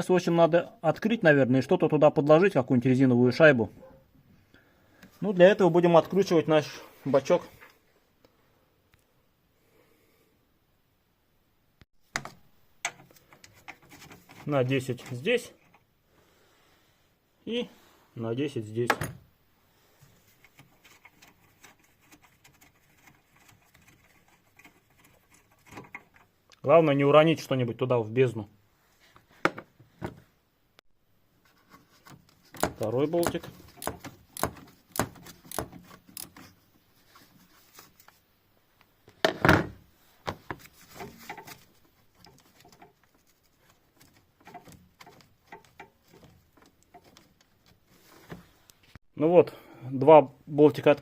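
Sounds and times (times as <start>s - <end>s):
light clicks and taps of tools: 12.2s - 14.4s.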